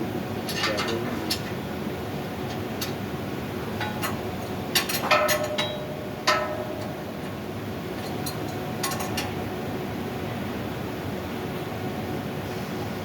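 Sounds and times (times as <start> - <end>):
metal tools clanking on metal: 0.5 - 1.5, 3.8 - 7.0, 8.0 - 9.4.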